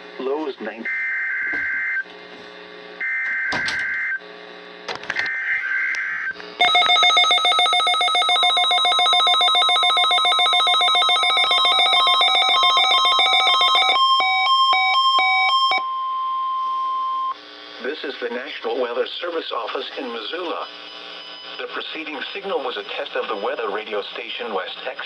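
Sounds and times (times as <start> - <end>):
steady alarm tone: 0.7 - 2.1, 3.0 - 4.2, 5.2 - 17.4
rapidly pulsing alert alarm: 3.0 - 4.2, 5.3 - 15.8.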